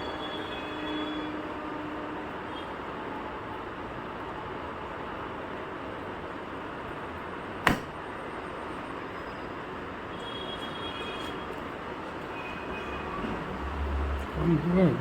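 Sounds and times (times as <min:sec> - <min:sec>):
glue tab snapping off panel: 0:07.7 - 0:07.9.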